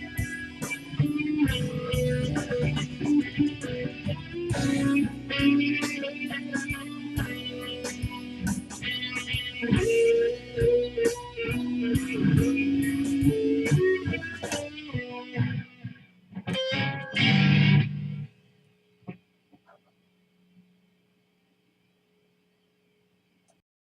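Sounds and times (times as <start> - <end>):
solo blues guitar: 0.0 - 18.3
strummed guitar chords: 0.0 - 18.3
faint hum: 0.0 - 23.6.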